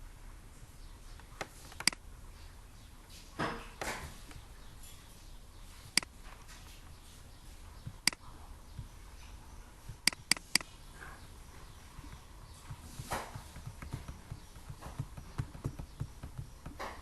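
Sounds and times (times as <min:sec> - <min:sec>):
computer mouse clicks: 0:01.4 - 0:02.0, 0:07.9 - 0:08.2, 0:09.9 - 0:10.7.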